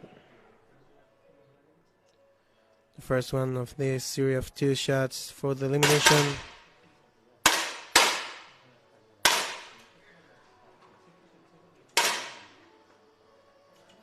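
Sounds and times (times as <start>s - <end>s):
air rifle shots: 5.8s - 6.6s, 7.5s - 8.6s, 9.2s - 9.8s, 12.0s - 12.6s.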